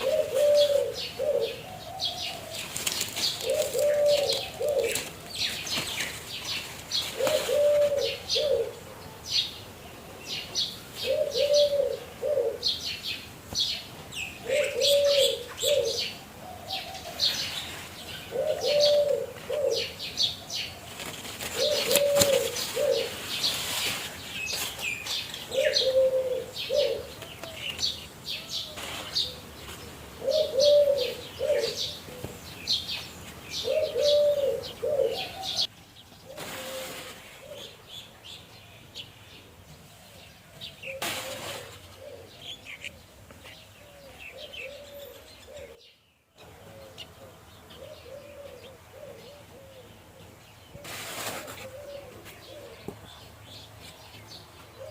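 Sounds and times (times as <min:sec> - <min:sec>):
dove cooing: 0:00.0 - 0:09.0, 0:10.8 - 0:13.2, 0:14.4 - 0:35.7, 0:36.3 - 0:37.8, 0:40.0 - 0:43.0, 0:43.8 - 0:45.8, 0:46.4 - 0:53.3
small birds chirping: 0:00.0 - 0:54.9.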